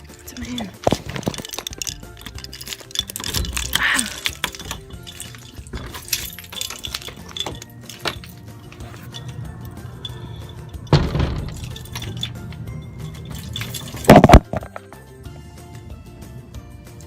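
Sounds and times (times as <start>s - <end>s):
keys jangling: 0.0s - 15.1s
background music: 0.0s - 17.0s
door lock: 0.9s - 14.8s.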